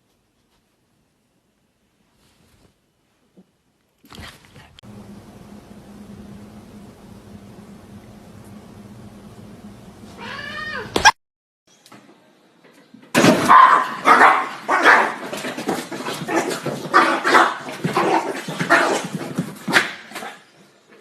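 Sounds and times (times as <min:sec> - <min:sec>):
dog yelping: 0:13.5 - 0:15.2.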